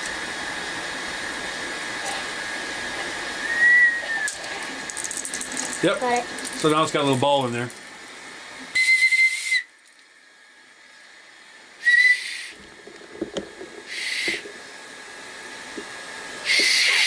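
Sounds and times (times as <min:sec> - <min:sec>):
pea whistle blasts: 0:03.4 - 0:04.4, 0:08.7 - 0:09.7, 0:11.8 - 0:12.6, 0:13.9 - 0:14.4, 0:16.5 - 0:17.0.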